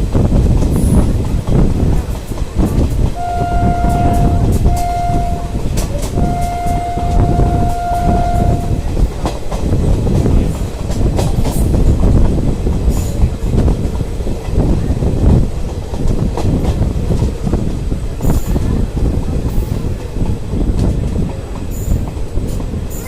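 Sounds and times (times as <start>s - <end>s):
train wheels clattering on rails: 0.0s - 23.0s
locomotive horn: 3.2s - 8.9s.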